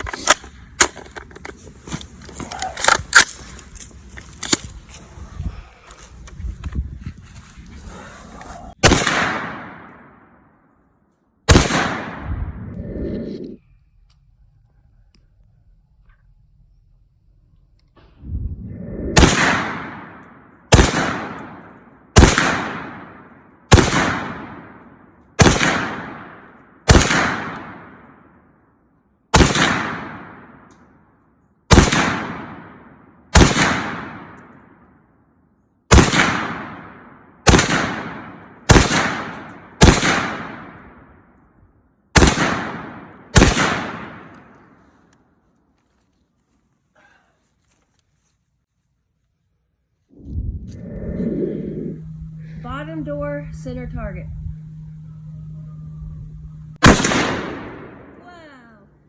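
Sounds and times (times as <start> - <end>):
rifle shots echoing: 8.8 - 10.4, 11.4 - 12.3, 19.2 - 28.4, 29.3 - 30.7, 31.7 - 34.8, 35.9 - 41.1, 42.1 - 44.9, 56.8 - 58.2.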